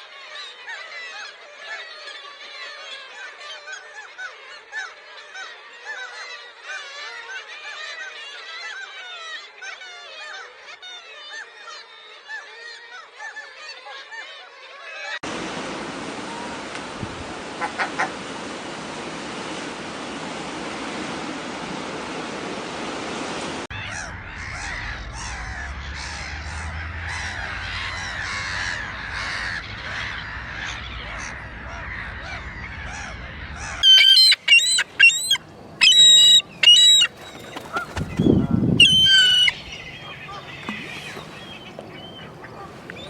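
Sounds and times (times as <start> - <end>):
gull flock calling: 0.0 - 15.2, 23.7 - 43.0
loud harsh gull calls: 23.7 - 43.0.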